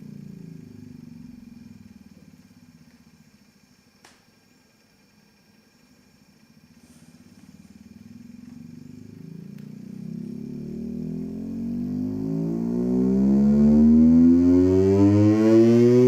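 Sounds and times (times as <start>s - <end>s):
low bass tone sweep from speaker: 7.0s - 16.0s.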